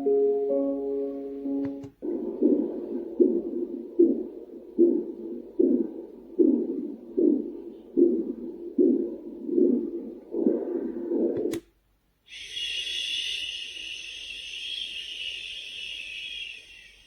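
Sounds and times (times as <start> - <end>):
click: 11.4 - 11.7.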